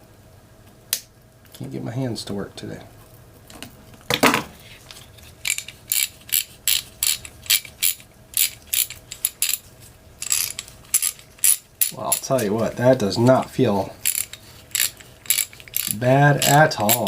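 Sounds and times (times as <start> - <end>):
ratchet pawl clicking: 5.4 - 9.6, 10.2 - 12.4, 14.0 - 17.0.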